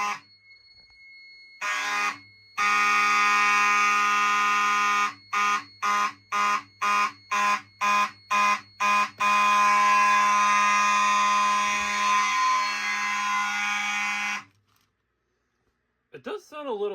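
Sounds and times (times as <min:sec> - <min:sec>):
buzzy fire alarm horns: 0:00.0 - 0:14.6.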